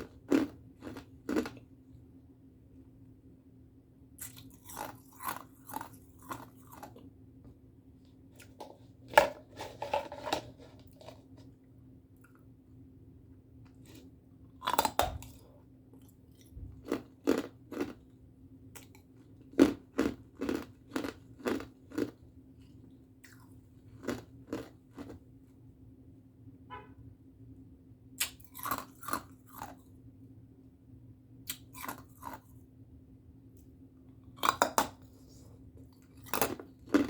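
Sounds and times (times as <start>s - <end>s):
ice crunching being chewed: 0.0s - 1.7s, 4.2s - 7.1s, 8.4s - 11.5s, 13.8s - 18.1s, 18.8s - 25.2s, 28.2s - 30.0s, 31.5s - 32.6s, 34.3s - 37.0s
faint steady hum: 0.0s - 37.0s.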